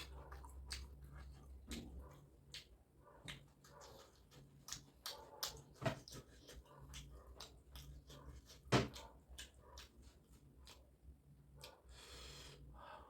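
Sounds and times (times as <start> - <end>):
wet chewing smacks: 0.0 - 12.0
faint low hum: 0.0 - 13.0.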